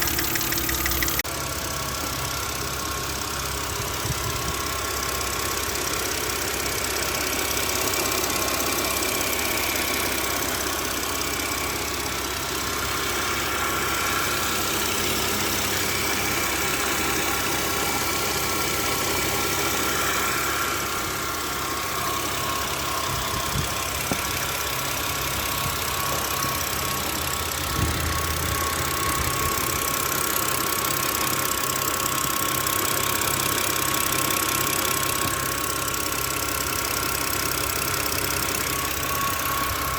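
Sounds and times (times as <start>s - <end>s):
valvetrain ticking: 0.0s - 1.2s
car engine idling: 0.0s - 39.9s.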